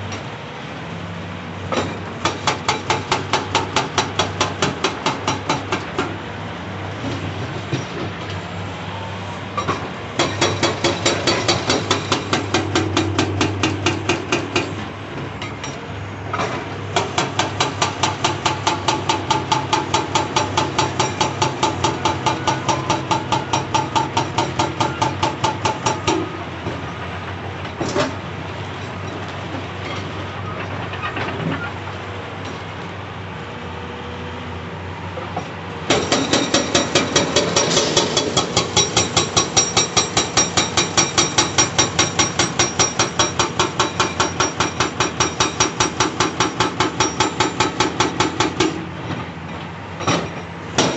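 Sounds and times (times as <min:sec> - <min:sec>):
hydraulic breaker hammering rock: 0:01.7 - 0:06.2, 0:09.6 - 0:14.8, 0:16.4 - 0:26.8, 0:35.9 - 0:48.9, 0:50.0 - 0:50.9.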